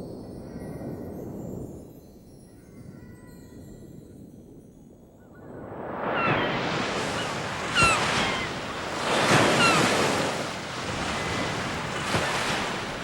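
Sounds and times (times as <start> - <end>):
ocean waves breaking: 5.6 - 13.0.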